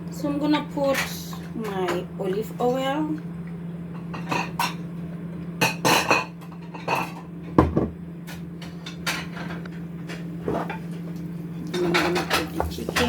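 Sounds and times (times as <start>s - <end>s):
steady low hum: 0.0s - 13.0s
utensils and dishes clattering: 4.0s - 4.8s, 5.6s - 7.3s, 8.3s - 10.9s, 11.7s - 13.0s.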